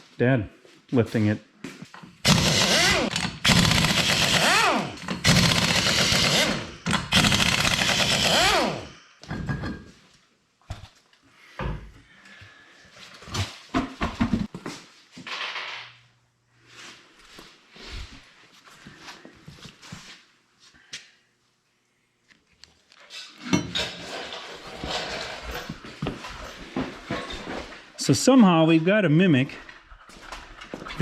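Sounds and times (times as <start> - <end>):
impact wrench hammering: 2.2 - 9.0.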